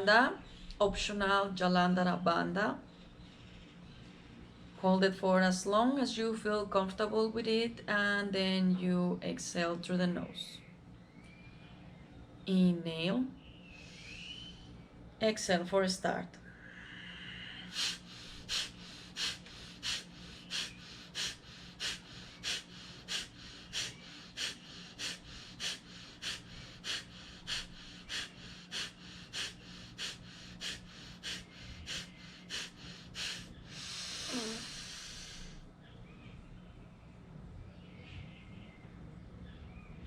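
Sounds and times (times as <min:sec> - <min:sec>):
deep nasal inhalation: 0:16.7 - 0:35.6
forced nasal exhalations: 0:17.6 - 0:35.6.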